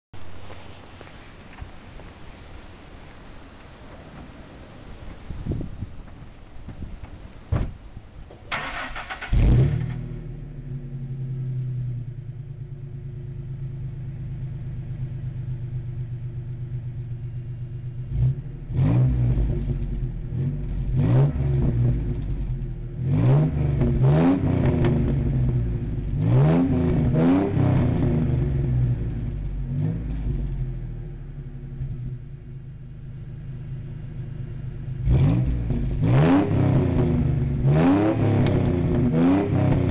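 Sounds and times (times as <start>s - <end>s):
car engine idling: 0.2s - 23.1s, 23.8s - 27.2s, 27.8s - 36.1s
car engine starting: 3.5s - 39.9s
car engine revving: 8.5s - 13.4s, 18.0s - 31.0s, 34.6s - 39.9s.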